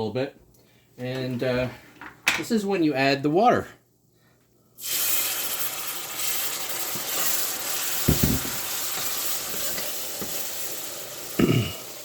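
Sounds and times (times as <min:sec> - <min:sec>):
sizzling and hissing in pot: 0:04.8 - 0:12.0.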